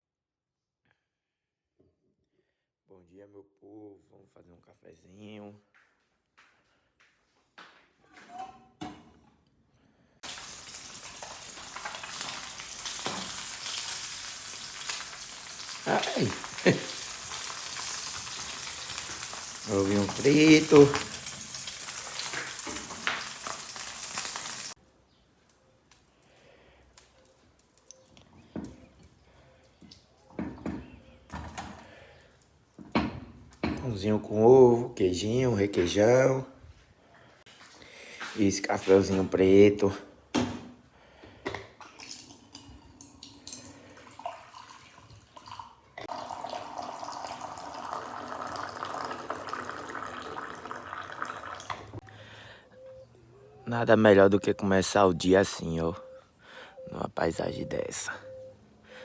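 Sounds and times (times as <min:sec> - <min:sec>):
coffee pouring into cup: 0:10.2 - 0:23.7, 0:42.1 - 0:52.0
egg sizzling in pan: 0:10.2 - 0:24.8, 0:46.0 - 0:52.0.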